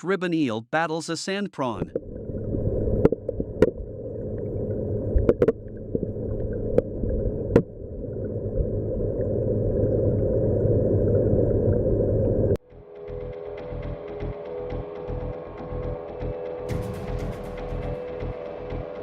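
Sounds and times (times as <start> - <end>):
muffled underwater rush: 1.7 - 12.6.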